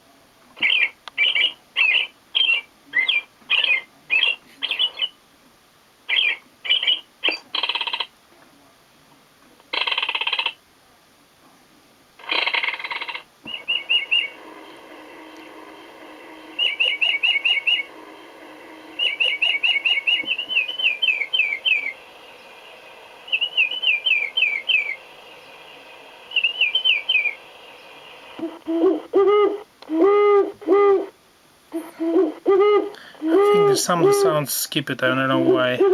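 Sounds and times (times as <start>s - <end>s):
recorded bird song chirps: 0.6s - 5.2s, 6.1s - 8.1s, 12.3s - 31.1s
recorded owl hoots: 12.2s - 34.4s, 35.3s - 35.9s.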